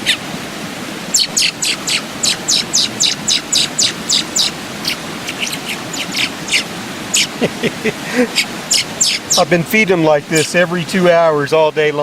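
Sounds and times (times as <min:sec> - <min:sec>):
young bird chirping: 0:00.0 - 0:00.2, 0:01.1 - 0:07.4, 0:08.2 - 0:09.6, 0:10.4 - 0:10.6
creek rushing: 0:00.0 - 0:12.0.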